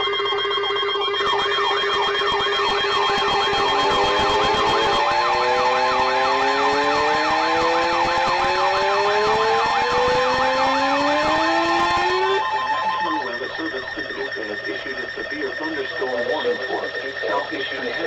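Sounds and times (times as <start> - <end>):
rising siren glides: 0.0 - 18.0
warbling siren-like alarm: 0.0 - 18.0
steady alert tones: 1.2 - 18.0.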